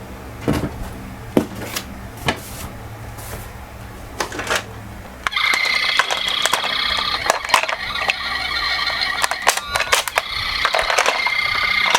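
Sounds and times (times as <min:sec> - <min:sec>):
plastic toy clicks and knocks: 0:05.3 - 0:11.9
toy electronic siren wailing: 0:05.3 - 0:11.9.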